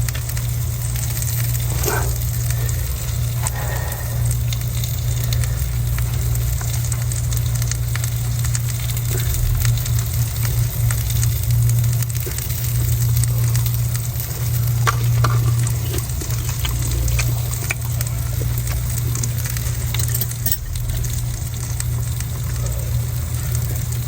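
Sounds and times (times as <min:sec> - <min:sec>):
salmon sizzling in a frying pan: 0:00.0 - 0:24.0
steady low hum: 0:00.0 - 0:24.0.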